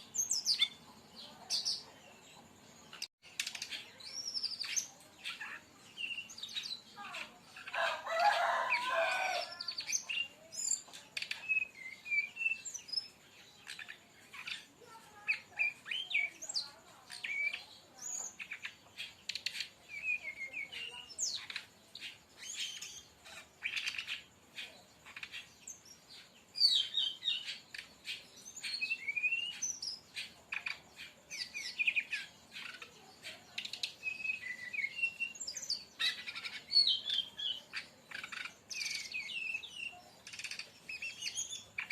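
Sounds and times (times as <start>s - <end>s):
bird singing chirps and whistles: 9.8s - 14.7s, 15.3s - 25.9s, 26.6s - 41.9s.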